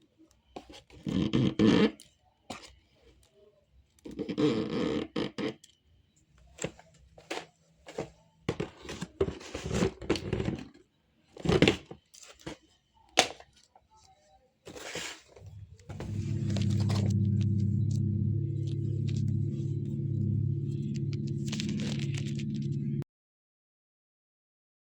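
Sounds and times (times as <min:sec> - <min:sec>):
plastic toy and packaging handled: 0:00.0 - 0:17.1, 0:20.7 - 0:22.8.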